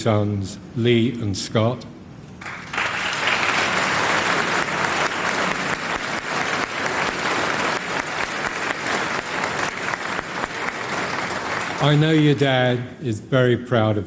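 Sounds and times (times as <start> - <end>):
large audience applauding: 2.4 - 12.6.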